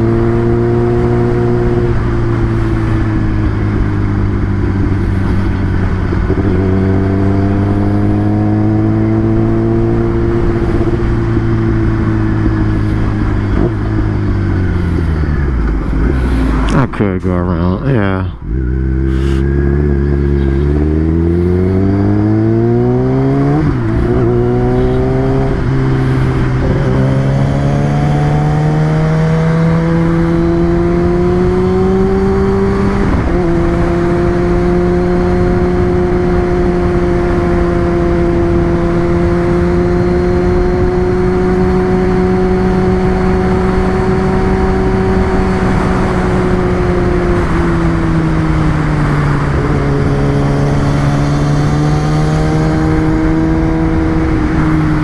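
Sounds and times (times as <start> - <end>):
motorcycle engine shifting gears: 0.0 - 16.9, 18.4 - 55.0
wind rush: 0.0 - 55.0.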